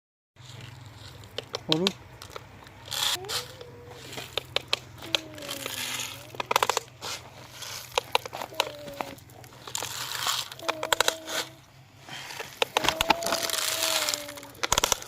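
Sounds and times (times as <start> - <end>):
crinkling scraping rustles: 0.4 - 15.0
plastic toy clicks and knocks: 1.3 - 7.0, 7.8 - 11.5, 12.4 - 15.0.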